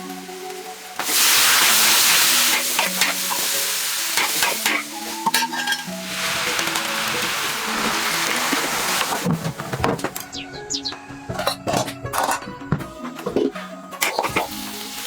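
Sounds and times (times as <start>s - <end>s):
noodles sizzling in hot pan: 0.0s - 9.4s, 14.0s - 15.0s.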